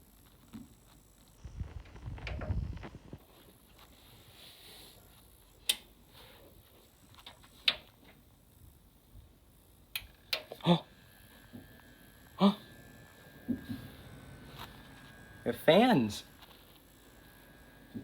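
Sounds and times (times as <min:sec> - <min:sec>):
faint high whine: 0:00.0 - 0:07.2, 0:08.3 - 0:18.0
cables and components clicking: 0:07.1 - 0:08.2, 0:09.9 - 0:10.6.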